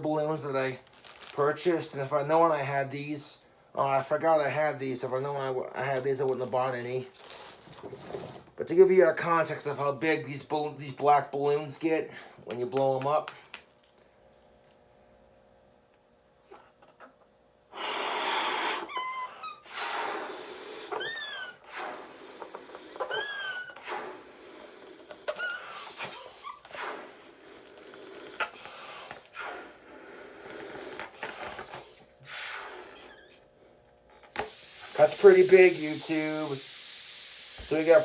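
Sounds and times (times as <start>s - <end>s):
breath puffs into balloon: 17.7s - 33.4s, 34.3s - 38.0s
balloon rubber squeaks: 17.8s - 24.3s, 25.0s - 27.4s, 28.0s - 29.8s, 30.5s - 33.4s, 34.3s - 38.0s.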